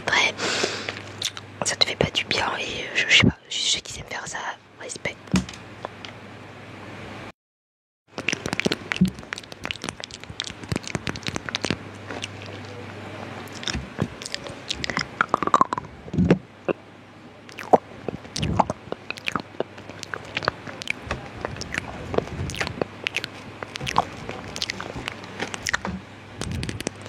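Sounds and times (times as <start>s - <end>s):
wet mouth clicks and smacks: 1.2s - 1.4s, 8.1s - 12.7s, 13.5s - 16.4s, 17.5s - 27.0s.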